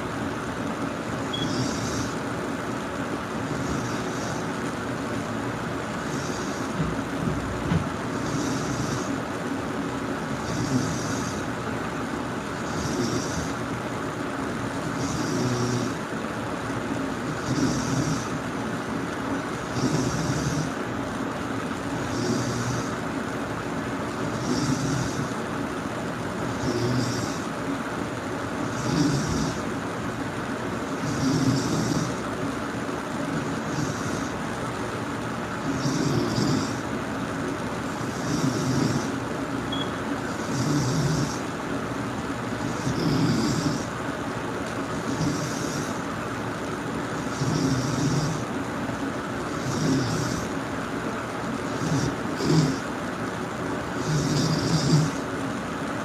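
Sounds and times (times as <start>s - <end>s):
person snoring: 1.3s - 2.2s, 3.4s - 4.6s, 6.0s - 7.2s, 8.0s - 9.2s, 10.3s - 11.5s, 12.5s - 13.6s, 14.8s - 16.1s, 17.2s - 18.4s, 19.6s - 20.8s, 22.0s - 23.0s, 24.1s - 25.4s, 26.4s - 27.6s, 28.6s - 29.7s, 30.9s - 32.3s, 33.2s - 34.4s, 35.6s - 36.9s, 37.9s - 39.2s, 40.2s - 41.5s, 42.5s - 44.0s, 44.9s - 46.1s, 47.2s - 48.5s, 49.4s - 50.6s, 51.6s - 52.9s, 54.0s - 55.3s.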